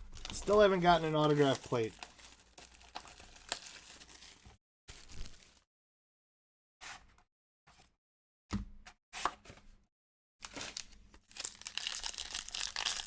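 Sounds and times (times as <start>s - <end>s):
foil wrappers crinkling: 0.0s - 5.6s, 10.4s - 13.0s
foil wrappers tearing: 0.0s - 5.6s, 10.4s - 13.0s.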